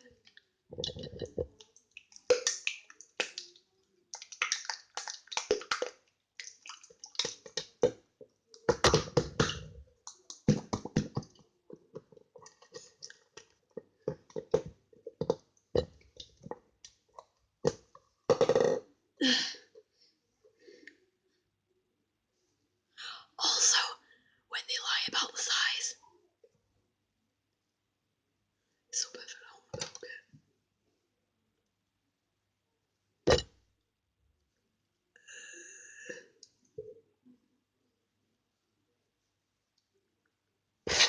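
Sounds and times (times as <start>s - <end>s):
slime squelching and popping: 0.2s - 11.4s.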